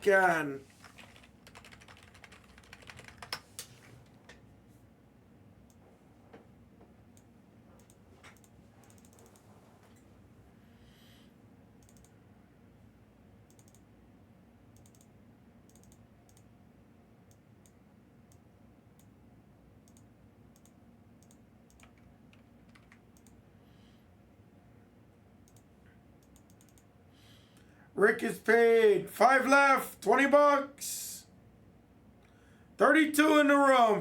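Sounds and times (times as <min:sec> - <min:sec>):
typing on computer keyboard: 0:00.7 - 0:03.8, 0:07.8 - 0:09.4, 0:11.8 - 0:12.1, 0:13.5 - 0:13.8, 0:14.8 - 0:15.1, 0:15.7 - 0:16.5, 0:19.9 - 0:23.4, 0:25.5 - 0:26.9.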